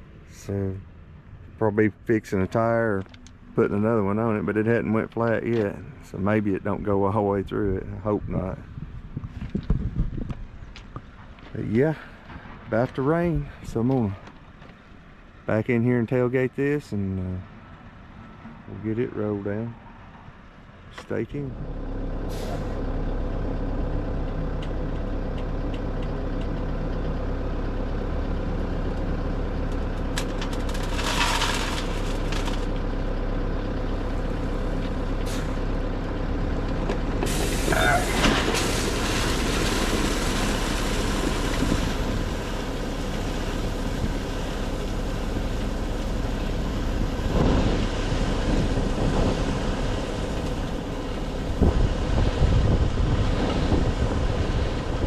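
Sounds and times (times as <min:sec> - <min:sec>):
diesel truck engine running: 0:00.0 - 0:18.0, 0:18.7 - 0:55.0
air brakes hissing: 0:22.3 - 0:22.8, 0:35.2 - 0:35.6, 0:37.2 - 0:39.0.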